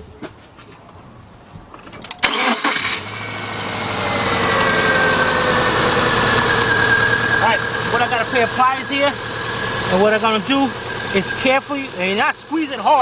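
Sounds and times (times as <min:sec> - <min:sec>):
engine starter cranking: 0:02.0 - 0:03.2
car engine idling: 0:02.3 - 0:13.0.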